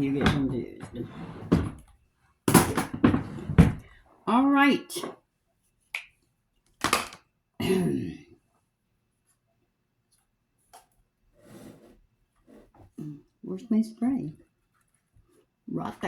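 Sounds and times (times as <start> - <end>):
woman coughing: 7.6 - 8.1
woman clearing her throat: 7.6 - 8.2
soft rustle of handling: 14.4 - 15.6.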